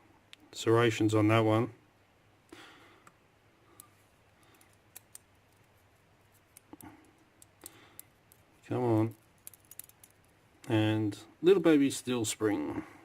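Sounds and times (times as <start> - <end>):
small metallic lock pin clicks: 9.4 - 10.2.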